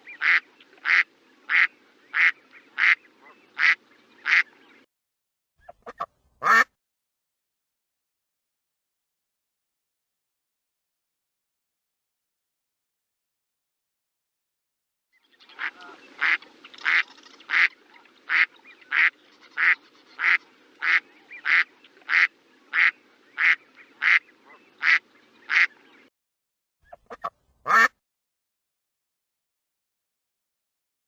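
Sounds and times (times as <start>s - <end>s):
duck quacking: 0.1s - 4.5s, 5.6s - 6.7s, 15.6s - 25.8s, 26.9s - 28.0s.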